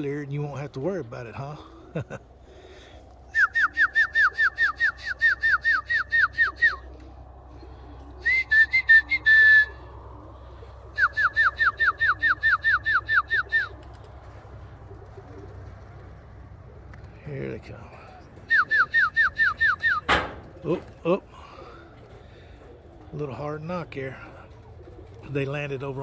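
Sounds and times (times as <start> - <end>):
whistle calling pigeons: 3.2 - 17.0, 18.0 - 24.0.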